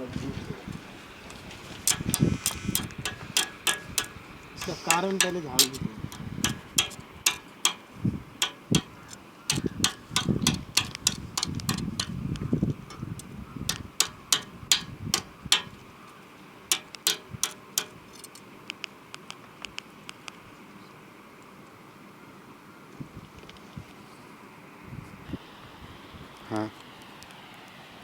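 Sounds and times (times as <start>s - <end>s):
sharp metallic taps on slag: 1.9s - 15.8s, 16.7s - 18.4s.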